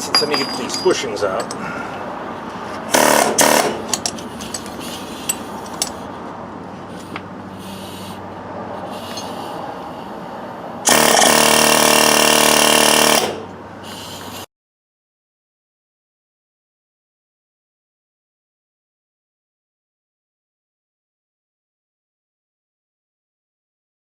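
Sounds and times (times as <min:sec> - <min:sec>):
pneumatic air tool running: 0:02.9 - 0:06.0, 0:10.8 - 0:14.4.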